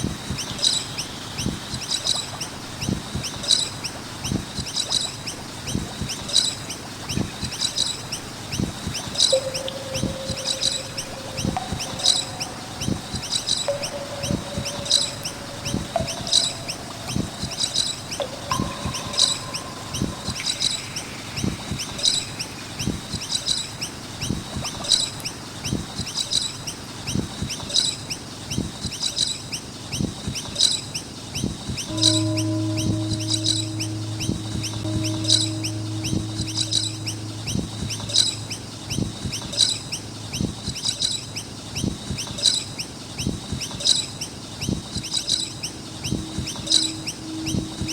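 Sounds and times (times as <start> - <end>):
birds chirping: 9.3 - 22.9.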